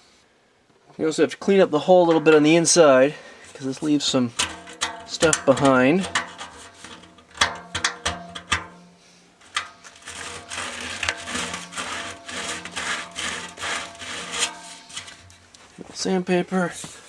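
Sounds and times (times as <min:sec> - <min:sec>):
scraping and rubbing strokes: 0:03.6 - 0:17.0.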